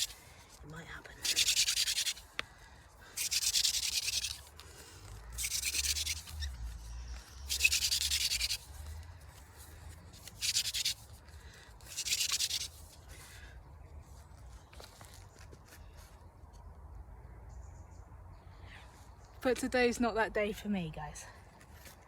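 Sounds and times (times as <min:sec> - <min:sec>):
wooden drill rasping on board: 0:01.2 - 0:02.2, 0:03.2 - 0:04.5, 0:05.4 - 0:06.5, 0:07.4 - 0:08.7, 0:10.3 - 0:11.0, 0:11.9 - 0:12.8.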